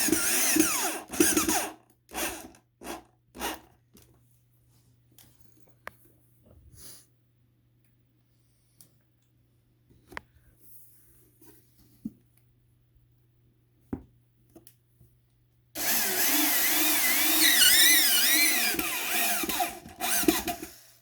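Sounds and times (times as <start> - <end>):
power drill driving screws: 0.0 - 3.7, 15.8 - 21.0.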